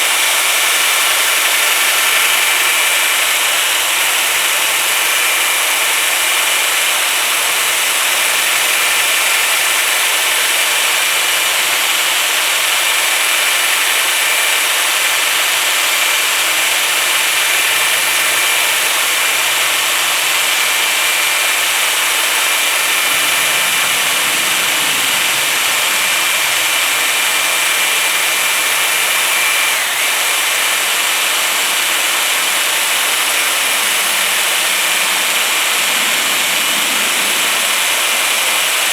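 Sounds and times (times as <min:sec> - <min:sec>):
electric drill motor whine: 0:00.0 - 0:38.9
sanding disc hissing on metal: 0:15.7 - 0:38.9.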